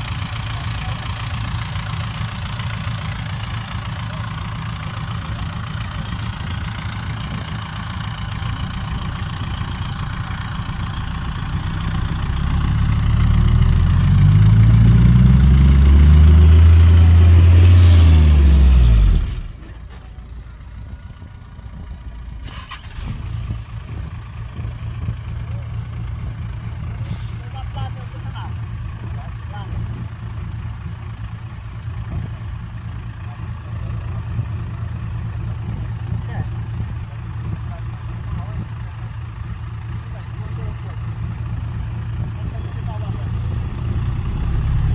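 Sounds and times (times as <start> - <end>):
diesel engine idling: 0.0 - 44.9
diesel engine revving: 0.0 - 44.9.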